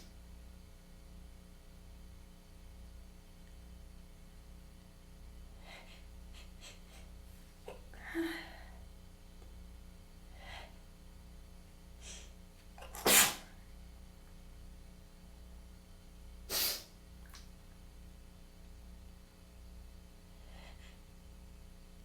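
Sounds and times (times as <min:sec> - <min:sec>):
person sneezing: 0:12.1 - 0:13.6, 0:16.5 - 0:16.9.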